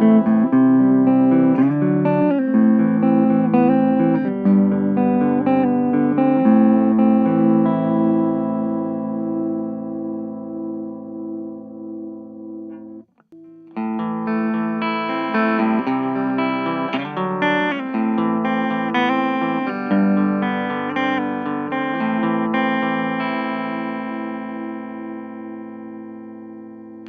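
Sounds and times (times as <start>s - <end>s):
electric guitar chords: 0.0s - 27.0s.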